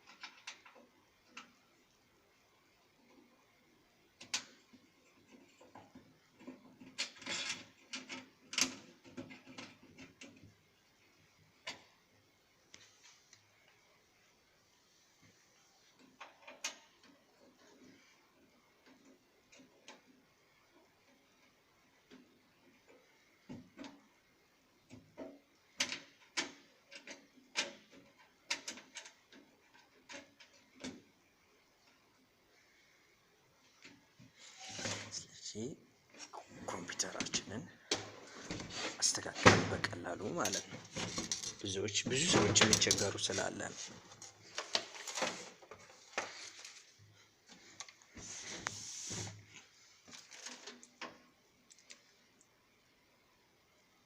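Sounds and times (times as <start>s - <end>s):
computer parts clicking and rattling: 4.2s - 10.4s, 36.8s - 46.6s.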